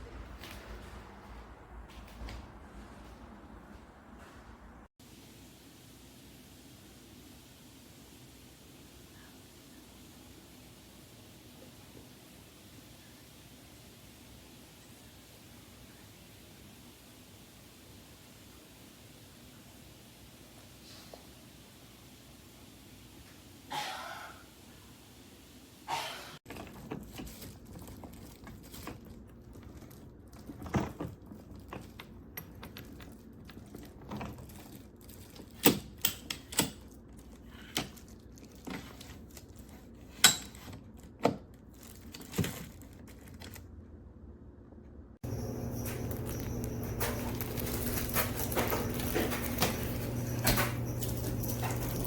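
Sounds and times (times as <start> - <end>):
clicks and knocks of hard objects: 45.2 - 52.0.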